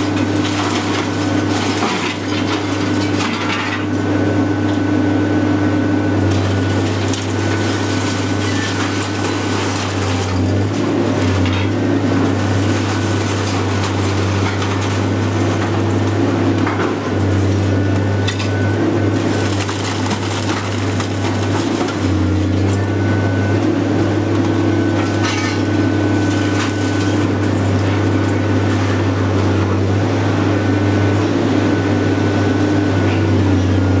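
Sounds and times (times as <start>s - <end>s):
hydraulic power unit drone: 0.0s - 34.0s
scrap metal clattering: 25.0s - 28.3s.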